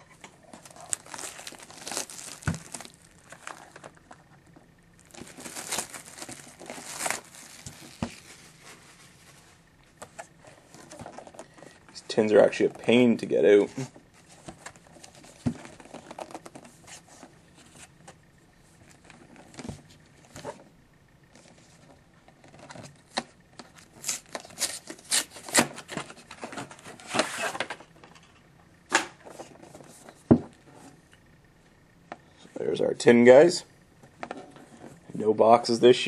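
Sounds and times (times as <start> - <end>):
packaging tearing and crinkling: 0.5 - 4.2, 5.0 - 8.8, 24.0 - 26.3.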